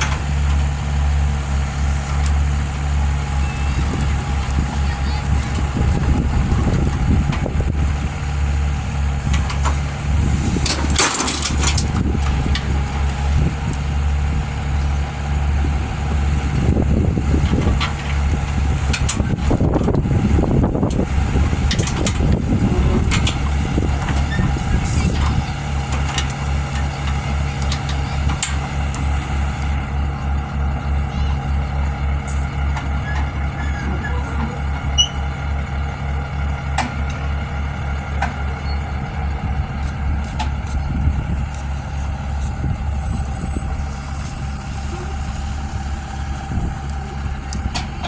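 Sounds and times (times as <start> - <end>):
heavy engine droning: 0.0 - 48.0
knocks and clanks: 9.2 - 12.9, 20.9 - 29.4.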